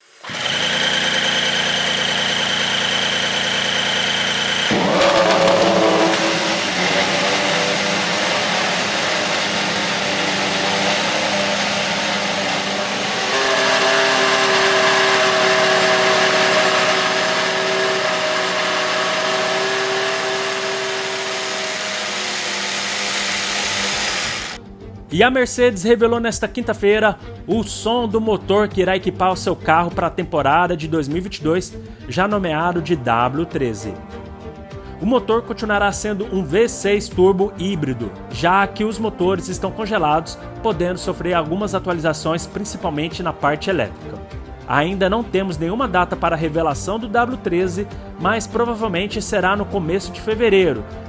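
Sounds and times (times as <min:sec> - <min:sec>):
racing car engine whining: 0:00.0 - 0:24.6.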